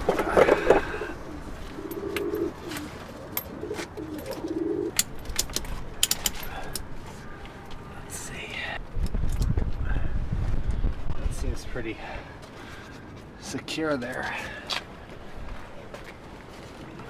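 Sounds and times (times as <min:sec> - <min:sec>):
pigeons cooing: 0:00.0 - 0:05.0.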